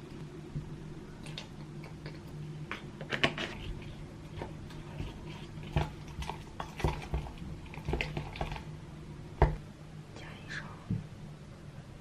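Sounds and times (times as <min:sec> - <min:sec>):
utensil scraping a bowl: 0:02.8 - 0:08.7.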